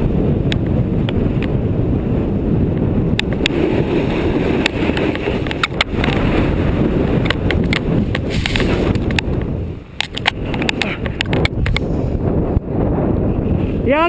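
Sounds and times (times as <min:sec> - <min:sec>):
wind buffeting microphone: 0:00.0 - 0:14.0
sharp clicks and knocks: 0:04.6 - 0:06.2, 0:07.2 - 0:11.9.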